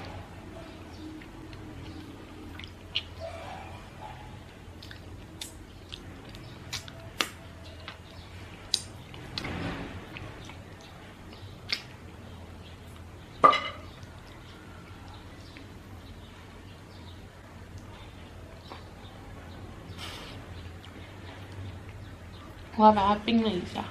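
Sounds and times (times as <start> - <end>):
tableware clicks and taps: 13.4 - 13.8
tableware clack: 13.4 - 13.9.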